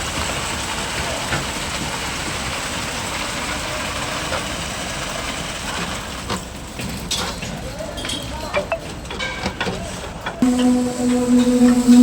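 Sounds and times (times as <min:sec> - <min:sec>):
construction machinery running: 0:10.4 - 0:12.0.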